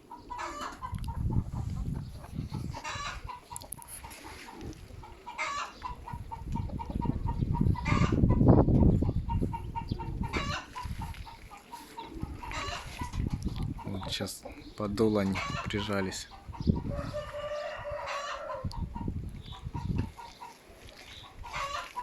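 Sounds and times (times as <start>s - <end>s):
wind buffeting microphone: 0.0s - 22.0s
bird calling: 2.1s - 8.2s, 9.3s - 13.2s.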